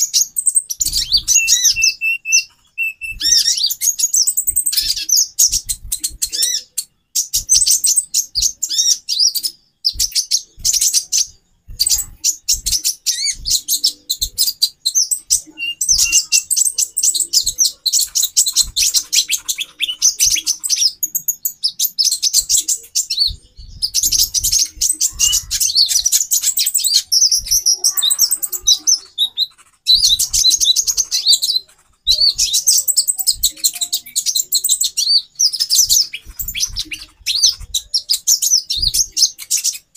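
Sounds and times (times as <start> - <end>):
sunbirds chirping: 0.0 - 39.9.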